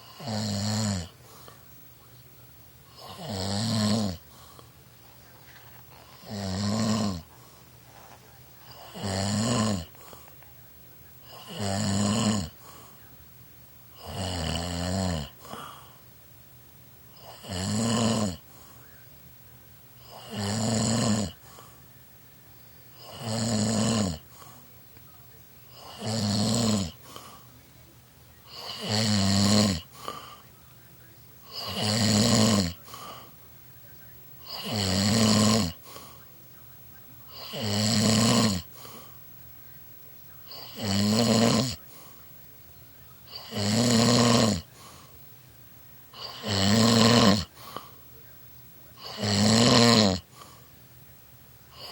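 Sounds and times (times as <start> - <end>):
man snoring: 0.0 - 1.7, 2.9 - 4.7, 5.4 - 10.4, 11.2 - 13.0, 13.9 - 16.0, 17.1 - 18.8, 20.0 - 21.8, 22.9 - 24.7, 25.7 - 27.6, 28.4 - 30.6, 31.4 - 33.4, 34.4 - 36.3, 37.3 - 39.2, 40.4 - 42.2, 43.3 - 45.1, 46.1 - 48.1, 48.9 - 50.7
quiet breaths: 0.0 - 51.9.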